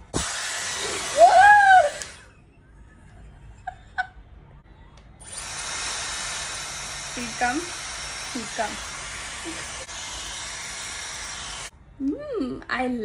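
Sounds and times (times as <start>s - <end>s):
hair dryer blowing: 0.0s - 2.3s, 5.2s - 11.7s
woman exclaiming: 1.2s - 2.0s.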